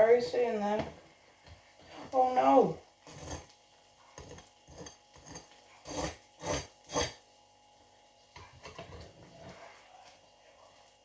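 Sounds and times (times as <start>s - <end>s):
metal knife scraping: 3.1s - 3.5s, 4.3s - 7.2s.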